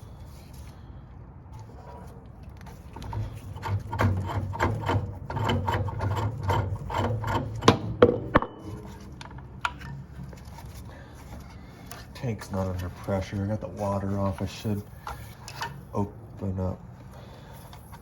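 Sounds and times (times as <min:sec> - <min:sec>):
steady low hum: 0:00.0 - 0:18.0
valve handle grinding: 0:03.0 - 0:08.0.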